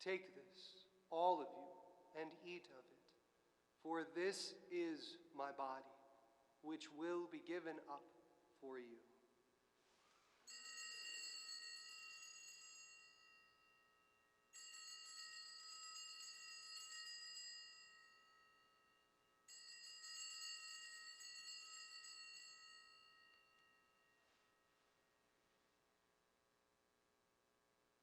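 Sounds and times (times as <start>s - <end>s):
altar bells ringing: 10.5s - 24.8s.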